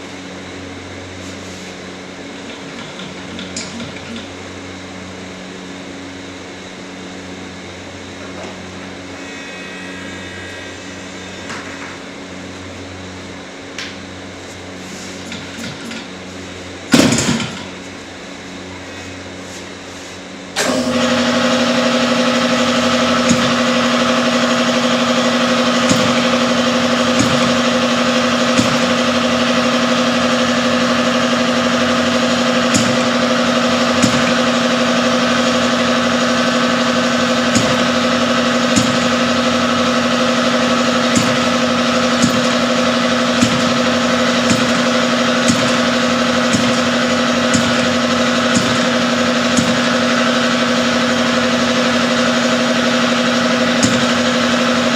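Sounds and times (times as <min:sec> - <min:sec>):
engine idling: 0:20.6 - 0:54.9.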